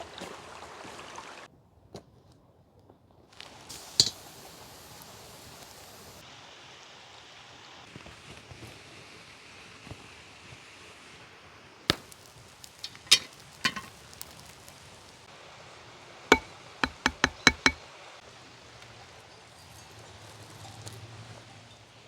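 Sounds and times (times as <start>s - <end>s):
chopping knocks: 16.3s - 17.8s.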